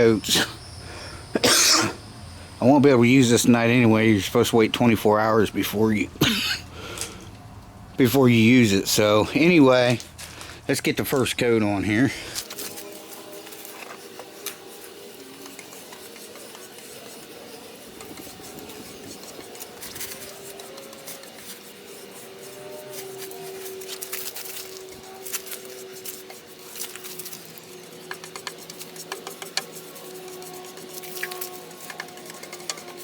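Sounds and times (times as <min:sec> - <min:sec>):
applicator rubbing on wood: 0:12.4 - 0:33.0.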